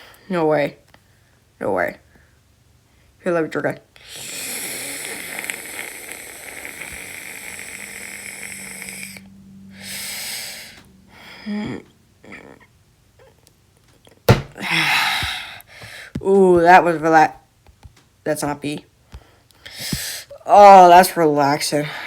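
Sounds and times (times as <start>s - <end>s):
small mouth sounds: 4.1s - 9.1s.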